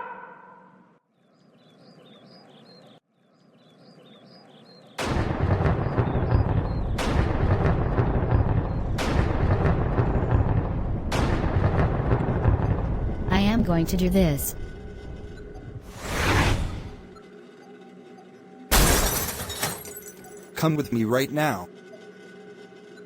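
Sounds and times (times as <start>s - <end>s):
harsh explosion-like blasts: 5.0s - 13.6s.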